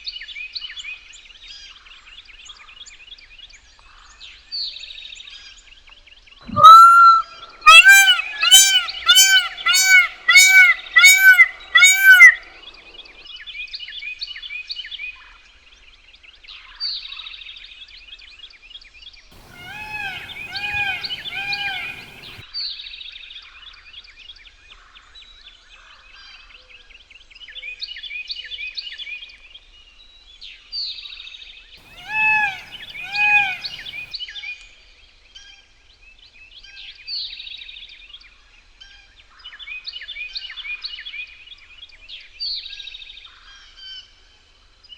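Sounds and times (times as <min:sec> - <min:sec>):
peacock wailing calls: 0:06.5 - 0:13.2, 0:19.4 - 0:22.4, 0:31.8 - 0:34.1
songbirds chirping: 0:06.5 - 0:13.2, 0:19.4 - 0:22.4, 0:31.8 - 0:34.1.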